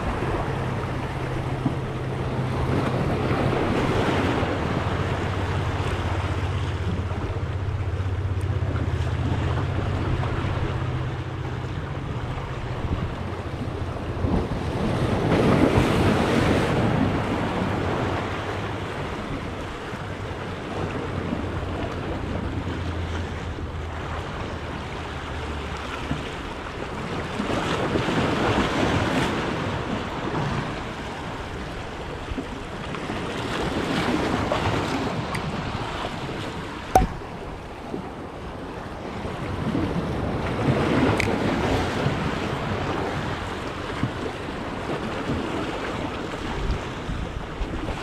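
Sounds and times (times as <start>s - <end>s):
wind buffeting microphone: 0.0s - 24.8s
sea waves breaking: 0.0s - 48.0s
sharp knock: 37.0s - 37.2s.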